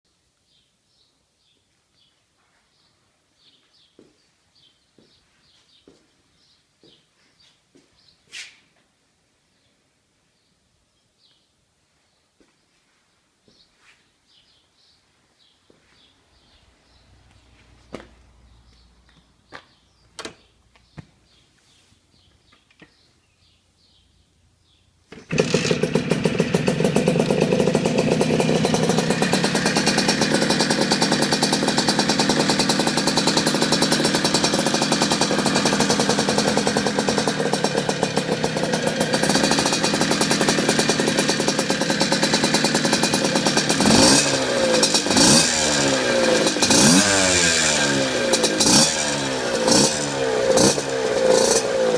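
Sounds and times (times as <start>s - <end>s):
engine revving in blips: 25.1s - 51.9s
two-stroke engine idling: 25.1s - 51.9s.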